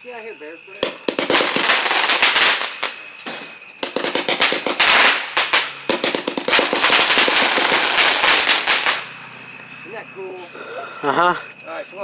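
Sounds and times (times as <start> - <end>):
firework crackling pops: 0.8 - 9.3.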